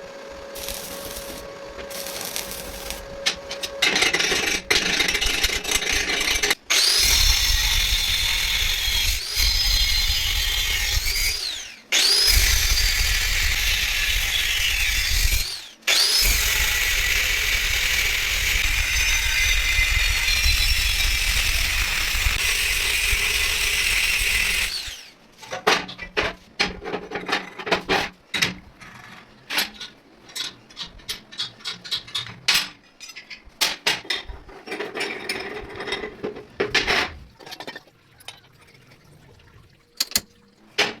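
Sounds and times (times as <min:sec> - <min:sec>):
power tool running: 0:00.0 - 0:25.1
tools clicking and knocking: 0:40.0 - 0:41.0.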